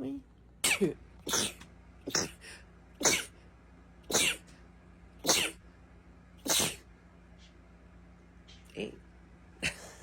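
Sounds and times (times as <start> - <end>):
person sneezing: 0.6 - 3.4, 4.1 - 4.5, 5.2 - 5.6, 6.4 - 6.9.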